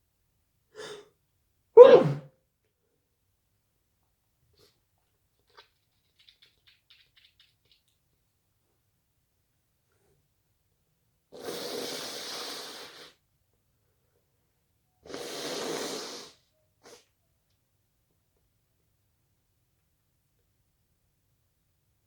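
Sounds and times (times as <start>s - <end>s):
person sniffing: 0.8s - 1.1s, 1.8s - 2.2s, 11.4s - 13.2s, 15.0s - 17.1s.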